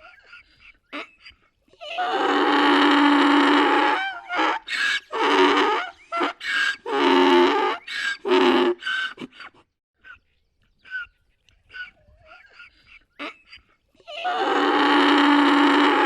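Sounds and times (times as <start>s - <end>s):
donkey braying: 1.7s - 9.6s, 10.8s - 16.0s.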